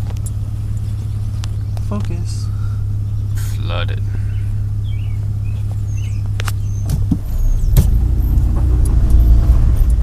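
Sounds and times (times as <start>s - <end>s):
car engine humming: 0.0s - 10.0s.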